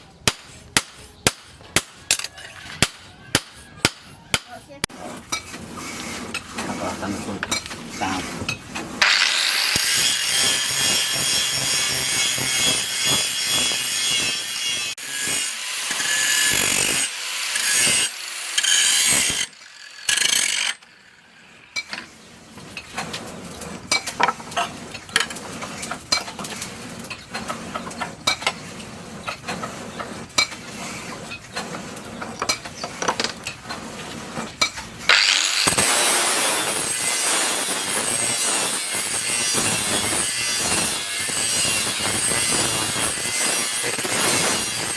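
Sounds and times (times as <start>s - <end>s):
file rasping on metal: 5.0s - 20.8s, 33.7s - 44.9s.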